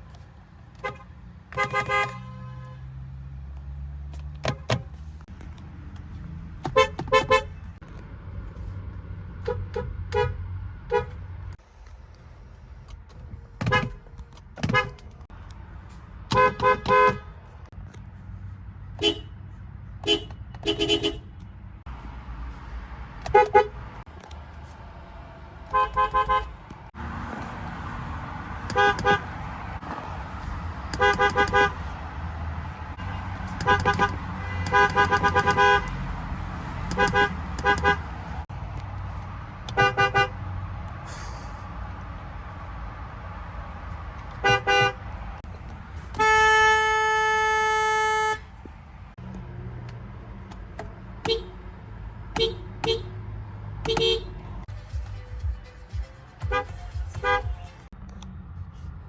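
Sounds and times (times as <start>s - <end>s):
car horns tooting: 0.8s - 3.1s, 6.6s - 7.8s, 9.4s - 11.2s, 13.6s - 15.1s, 16.3s - 17.7s, 18.9s - 19.4s, 20.0s - 21.5s, 23.2s - 24.1s, 25.6s - 26.7s, 28.6s - 29.6s, 30.8s - 32.0s, 32.9s - 38.4s, 39.6s - 40.5s, 44.3s - 45.2s, 46.0s - 48.6s, 51.2s - 57.9s.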